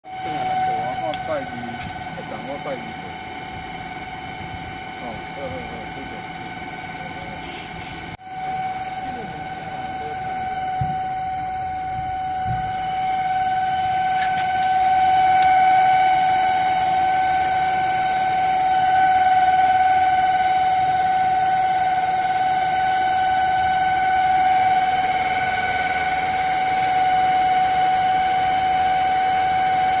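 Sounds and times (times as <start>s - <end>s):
high-pitched car whine: 0.0s - 30.0s.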